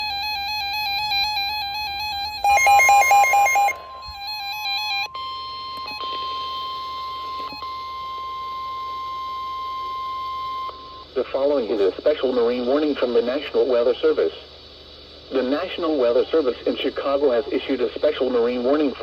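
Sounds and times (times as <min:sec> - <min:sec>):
steady warning alarm tone: 0:02.2 - 0:07.8
quick beeps: 0:02.4 - 0:04.4
warbling digital data header: 0:02.4 - 0:04.6.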